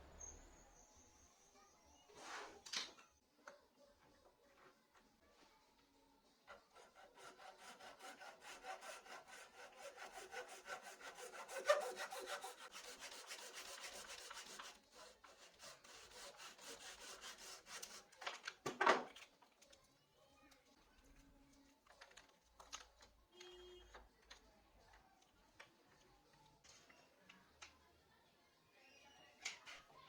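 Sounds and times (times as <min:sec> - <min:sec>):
sandpaper rubbing wood: 0:06.8 - 0:18.0.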